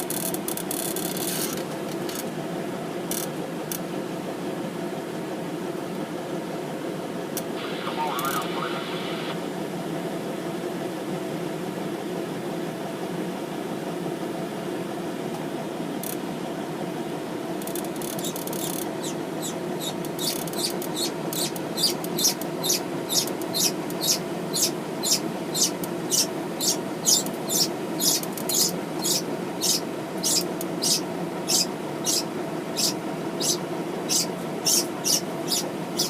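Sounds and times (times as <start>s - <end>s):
steady low hum: 1.8s - 36.0s
small bird peeping: 19.0s - 36.0s.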